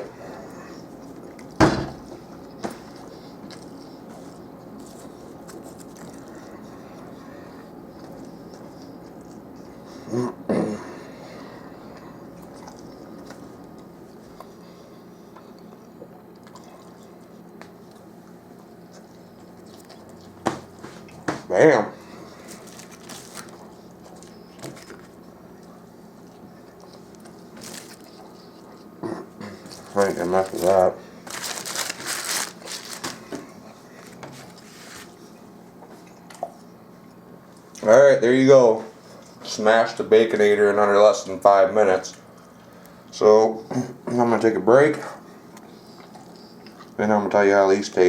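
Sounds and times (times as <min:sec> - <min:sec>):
person chewing food: 0:00.0 - 0:37.8, 0:45.2 - 0:47.0
paper wrapper crinkling: 0:22.4 - 0:25.2, 0:27.0 - 0:28.2, 0:29.6 - 0:33.4.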